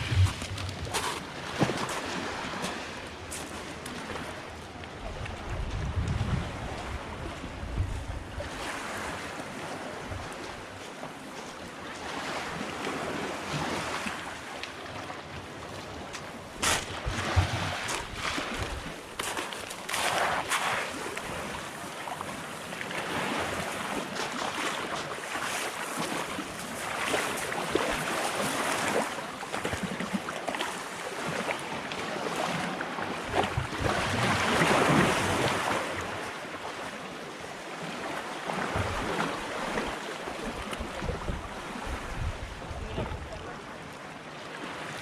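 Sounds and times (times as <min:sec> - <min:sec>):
wind rumbling on microphone: 0:00.0 - 0:01.6, 0:05.0 - 0:08.7, 0:40.6 - 0:43.5
sea waves washing onto shore: 0:00.0 - 0:05.7, 0:08.2 - 0:45.0.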